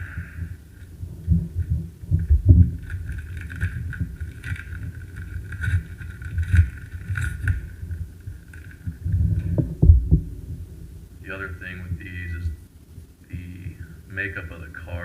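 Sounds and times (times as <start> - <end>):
handling rumble on microphone: 0.0 - 15.0
wrapper tearing and crinkling: 2.6 - 9.0.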